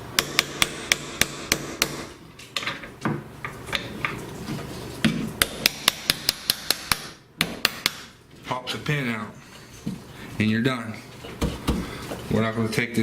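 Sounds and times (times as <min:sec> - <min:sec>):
hammer tapping on metal: 0:00.2 - 0:02.1, 0:05.4 - 0:08.1.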